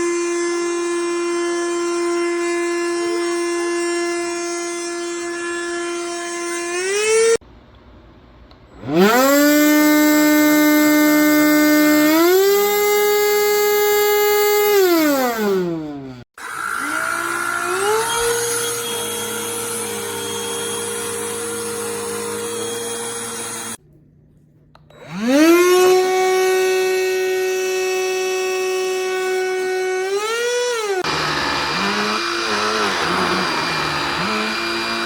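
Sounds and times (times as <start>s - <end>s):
handheld vacuum motor whining: 8.8s - 23.8s, 24.9s - 35.0s.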